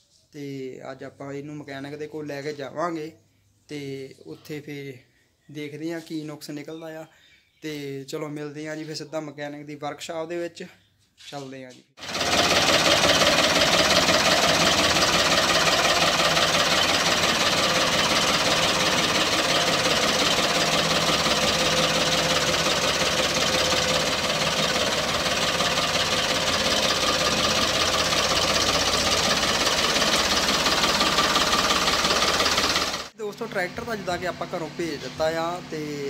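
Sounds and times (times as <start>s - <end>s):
tractor diesel engine rattling: 12.0s - 36.0s.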